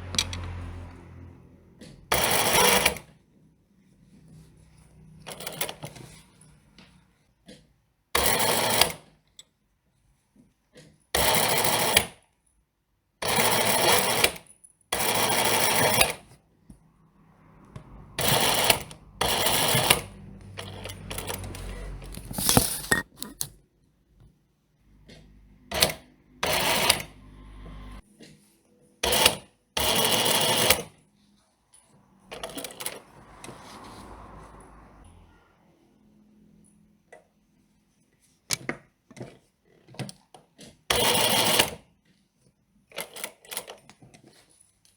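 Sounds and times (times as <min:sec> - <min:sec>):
clicks and handling noise: 0:00.0 - 0:00.6, 0:21.0 - 0:23.6
sewing machine stitching: 0:01.8 - 0:03.2, 0:05.2 - 0:06.4, 0:08.2 - 0:09.2, 0:11.2 - 0:12.2, 0:13.2 - 0:16.4, 0:18.1 - 0:23.5, 0:25.1 - 0:28.0, 0:29.0 - 0:31.0, 0:32.3 - 0:34.0, 0:39.8 - 0:41.9.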